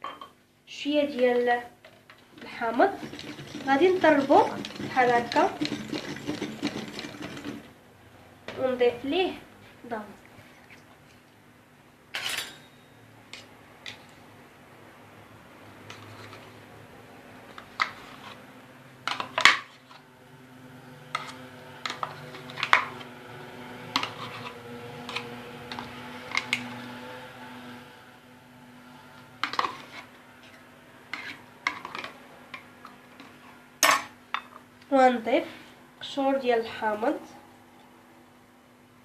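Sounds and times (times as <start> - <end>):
utensils clinking against bowl: 2.4 - 7.6.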